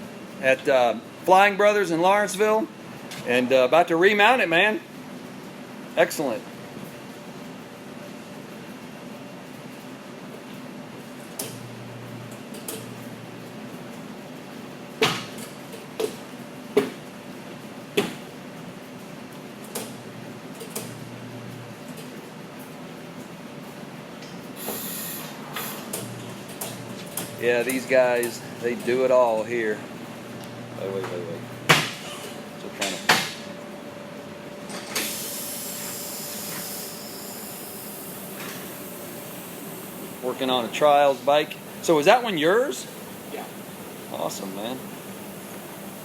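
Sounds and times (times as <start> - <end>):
steady background hum: 0.0 - 46.0
compressed air hissing: 24.6 - 26.0, 34.9 - 38.9
sharp knocks: 31.7 - 32.1.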